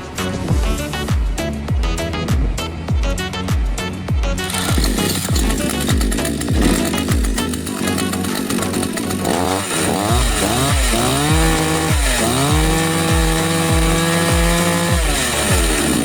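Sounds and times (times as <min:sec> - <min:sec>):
chainsaw engine revving: 0:04.4 - 0:16.0.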